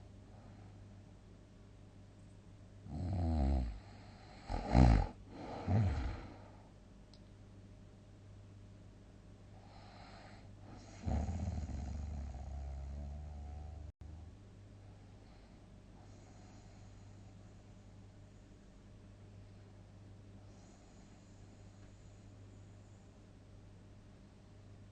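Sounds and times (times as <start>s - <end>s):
person snoring loudly: 2.9s - 6.5s, 10.8s - 13.9s
soft breath: 5.3s - 6.8s, 9.5s - 11.3s, 14.8s - 18.9s, 20.4s - 23.4s.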